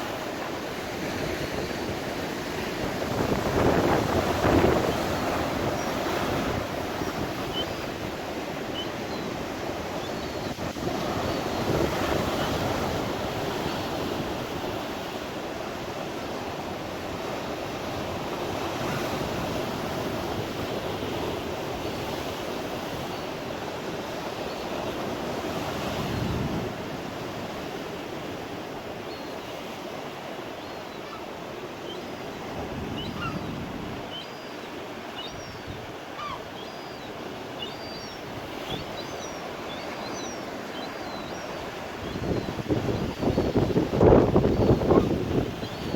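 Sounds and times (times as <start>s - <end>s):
sea surf breaking: 0.0s - 22.8s
wind buffeting microphone: 1.0s - 15.0s, 41.6s - 45.9s
faint short high calls: 34.1s - 40.4s.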